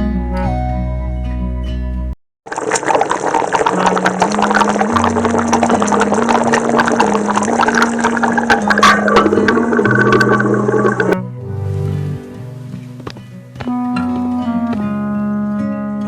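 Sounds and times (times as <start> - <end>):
hissing crackling noise: 2.5 - 11.2.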